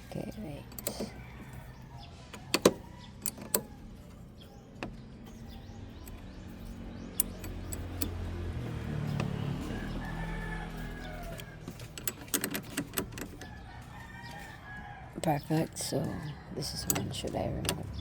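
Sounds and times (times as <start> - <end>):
vehicle engine drone: 0.0 - 18.0
wrench clinking on metal: 6.0 - 8.3.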